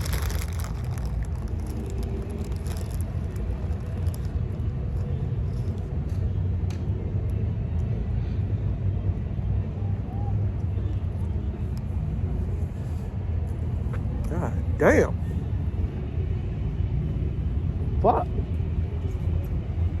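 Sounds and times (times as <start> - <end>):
car engine rumble from inside: 0.0 - 5.9.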